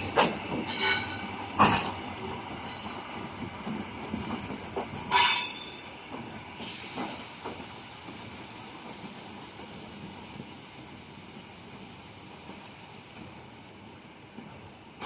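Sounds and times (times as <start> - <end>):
train wheels knocking over rail joints: 0.0 - 10.1
high wheel squeal: 8.2 - 11.5.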